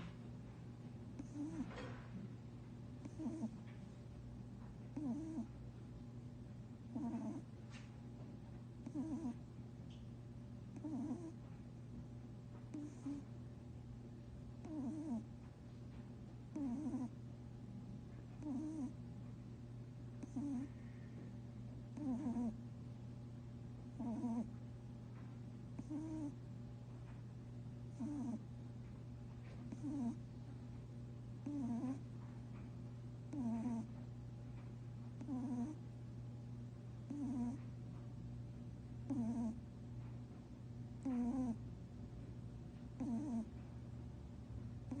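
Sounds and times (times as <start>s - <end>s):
steady low hum: 0.0s - 45.0s
rabbit snoring: 1.1s - 2.4s, 3.0s - 3.9s, 4.8s - 5.6s, 6.9s - 7.9s, 8.8s - 9.5s, 10.7s - 11.6s, 12.6s - 13.4s, 14.6s - 15.4s, 16.5s - 17.2s, 18.2s - 19.0s, 20.1s - 21.3s, 21.9s - 22.7s, 23.8s - 24.6s, 25.7s - 26.4s, 27.8s - 28.6s, 29.4s - 30.3s, 31.4s - 32.2s, 33.2s - 34.1s, 35.1s - 35.9s, 37.0s - 37.8s, 39.0s - 39.7s, 41.0s - 41.7s, 42.9s - 43.6s, 44.8s - 45.0s.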